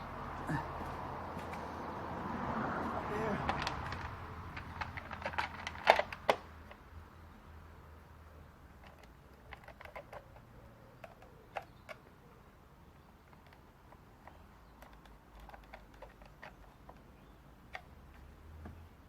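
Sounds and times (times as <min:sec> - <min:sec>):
plastic clicks and knocks: 0:03.5 - 0:06.8, 0:08.8 - 0:12.1.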